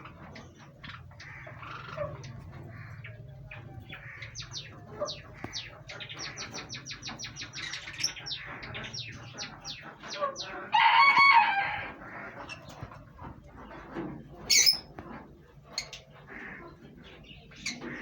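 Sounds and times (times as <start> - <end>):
parrots chirping: 14.4 - 15.0.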